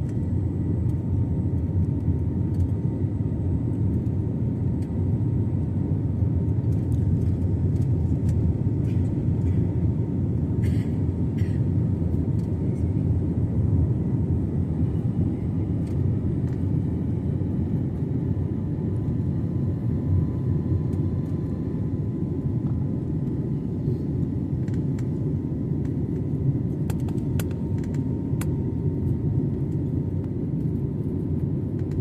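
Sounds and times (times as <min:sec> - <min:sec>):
airplane cabin engine rumble: 0:00.0 - 0:32.0
faint steady whine: 0:00.0 - 0:32.0.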